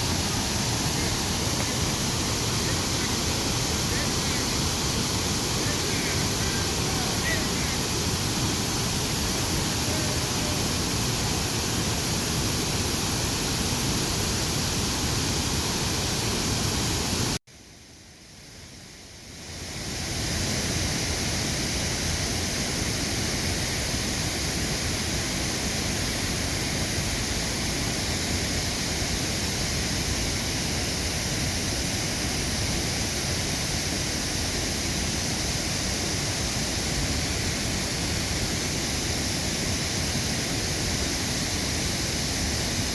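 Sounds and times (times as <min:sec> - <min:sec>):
waterfall rushing: 0:00.0 - 0:17.4, 0:26.0 - 0:42.9.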